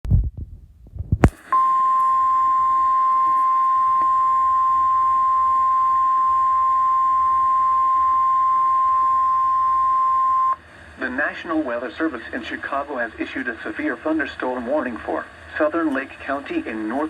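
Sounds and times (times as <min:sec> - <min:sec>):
steady high-pitched beep: 0:01.4 - 0:10.6.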